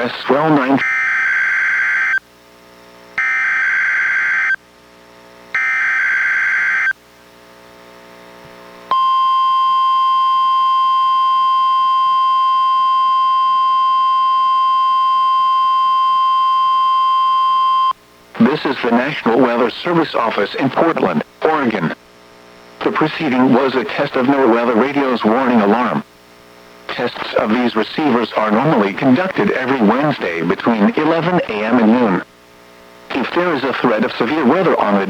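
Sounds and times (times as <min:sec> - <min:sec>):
steady warning alarm tone: 0:00.8 - 0:02.2, 0:03.2 - 0:04.6, 0:05.5 - 0:07.0, 0:08.9 - 0:18.0.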